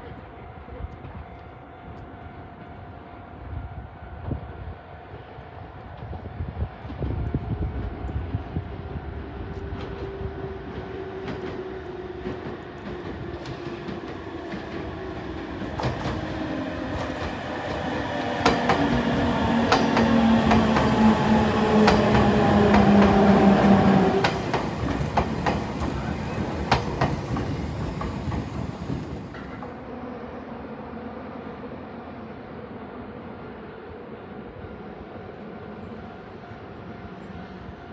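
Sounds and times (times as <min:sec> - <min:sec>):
train motor whine: 0:11.0 - 0:29.8
train wheels clicking over rail joints: 0:12.2 - 0:29.8.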